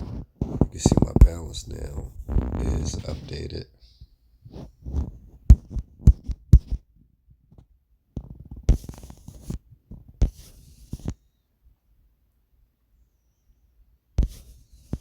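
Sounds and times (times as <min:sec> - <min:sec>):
microphone handling thumps: 0:00.0 - 0:03.6, 0:04.4 - 0:06.9.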